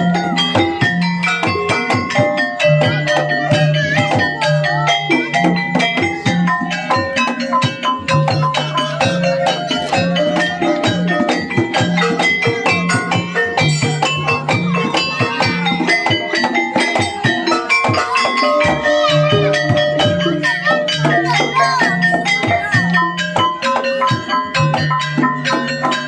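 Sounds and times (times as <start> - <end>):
drums and percussion: 0.0 - 26.0
gamelan music: 0.0 - 26.0
metallophones ringing: 0.0 - 26.0
bending melodic line: 4.4 - 23.7.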